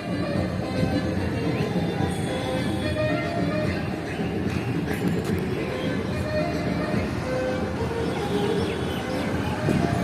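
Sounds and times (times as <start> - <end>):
music playing: 0.0 - 10.0
traffic rumble: 0.0 - 10.0.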